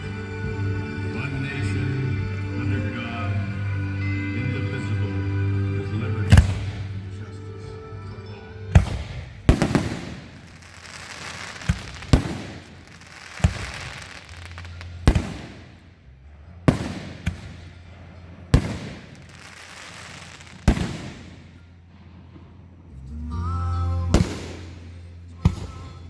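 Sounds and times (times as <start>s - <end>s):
firework shells bursting: 8.8s - 22.6s, 24.2s - 25.9s.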